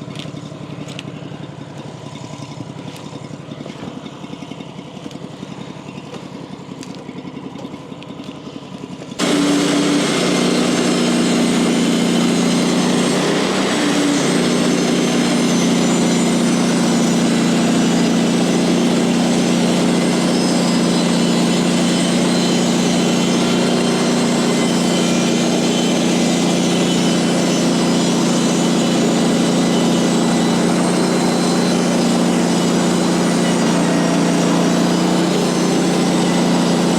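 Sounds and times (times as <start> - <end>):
small engine running: 0.0 - 36.9.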